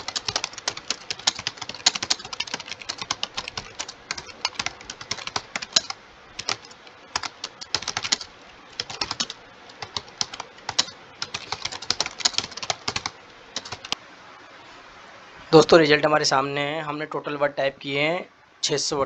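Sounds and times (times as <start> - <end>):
fast keyboard typing: 0.0 - 14.0.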